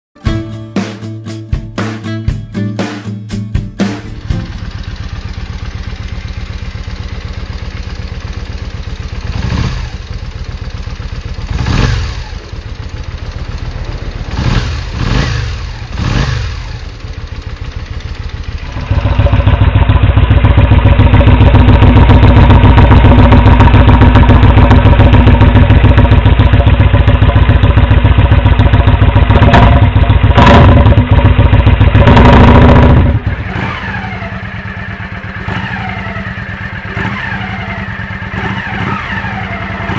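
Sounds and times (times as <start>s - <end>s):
motorcycle engine idling: 3.8s - 39.9s.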